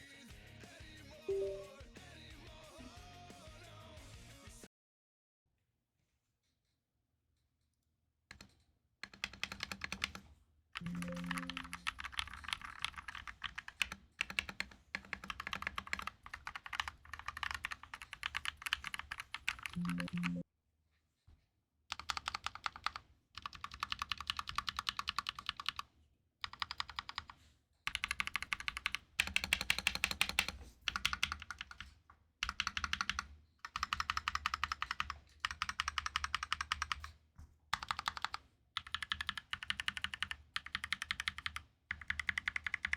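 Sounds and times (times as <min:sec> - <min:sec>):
mechanical keyboard typing: 0:08.3 - 0:10.2, 0:10.8 - 0:20.4, 0:21.9 - 0:37.2, 0:37.8 - 0:42.9.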